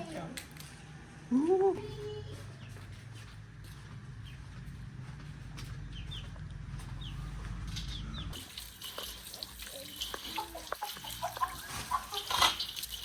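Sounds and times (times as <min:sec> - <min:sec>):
chickens chirping: 0:04.2 - 0:08.4, 0:09.8 - 0:12.9
running water: 0:08.4 - 0:13.0
chickens clucking: 0:09.7 - 0:13.0.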